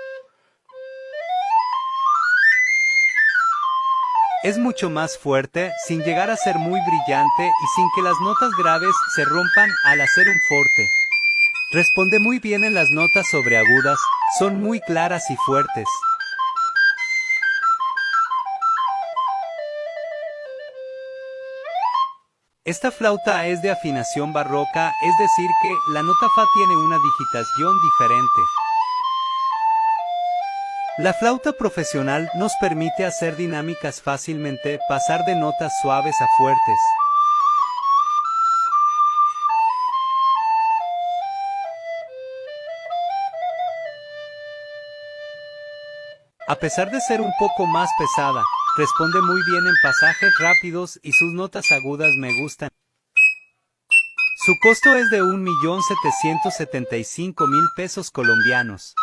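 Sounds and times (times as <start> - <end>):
recorder playing notes: 0.0 - 59.0.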